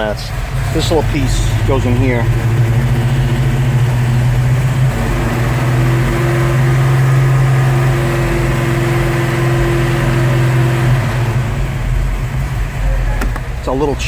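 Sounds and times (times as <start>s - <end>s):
car engine idling: 0.0s - 14.0s
higher steady tone: 0.2s - 14.0s.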